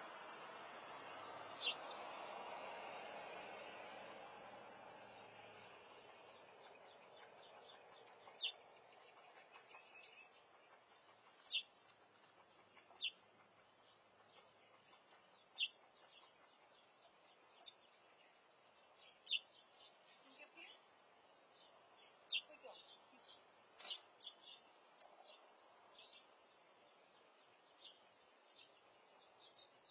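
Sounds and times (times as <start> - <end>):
faint background hiss: 0.0 - 29.9
young bird chirping: 1.6 - 2.0, 6.7 - 13.3, 14.4 - 17.9, 19.0 - 20.8, 21.6 - 26.3.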